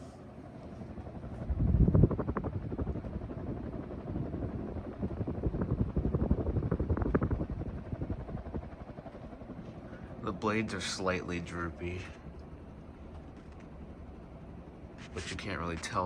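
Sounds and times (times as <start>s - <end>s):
ceiling fan blades whooshing: 0.0s - 16.0s.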